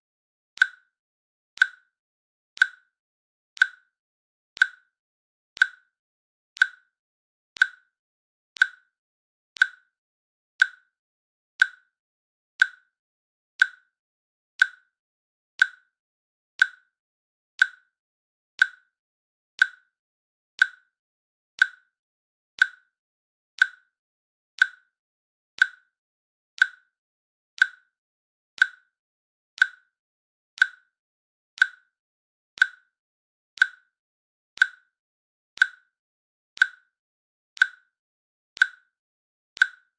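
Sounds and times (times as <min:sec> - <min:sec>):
timer ticking clicks: 0:00.6 - 0:01.0, 0:01.6 - 0:02.0, 0:02.6 - 0:03.0, 0:03.6 - 0:04.0, 0:04.6 - 0:05.0, 0:05.6 - 0:06.0, 0:06.6 - 0:07.0, 0:07.6 - 0:08.0, 0:08.6 - 0:09.0, 0:09.6 - 0:10.0, 0:10.6 - 0:11.0, 0:11.6 - 0:12.0, 0:12.6 - 0:13.0, 0:13.6 - 0:14.0, 0:14.6 - 0:15.0, 0:15.6 - 0:16.0, 0:16.6 - 0:17.0, 0:17.6 - 0:18.0, 0:18.6 - 0:19.0, 0:19.6 - 0:20.0, 0:20.6 - 0:21.0, 0:21.6 - 0:22.0, 0:22.6 - 0:23.0, 0:23.6 - 0:24.0, 0:24.6 - 0:25.0, 0:25.6 - 0:26.0, 0:26.6 - 0:27.0, 0:27.6 - 0:28.0, 0:28.6 - 0:29.0, 0:29.6 - 0:30.0, 0:30.6 - 0:31.0, 0:31.6 - 0:32.0, 0:32.6 - 0:33.0, 0:33.6 - 0:34.0, 0:34.6 - 0:35.0, 0:35.6 - 0:36.0, 0:36.6 - 0:37.0, 0:37.6 - 0:38.0, 0:38.6 - 0:39.0, 0:39.6 - 0:39.9.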